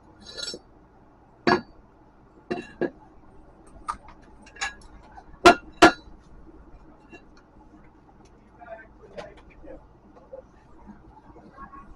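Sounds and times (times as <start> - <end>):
metal tools tapping and clinking: 0.2 - 0.6, 2.5 - 3.0, 4.4 - 6.1.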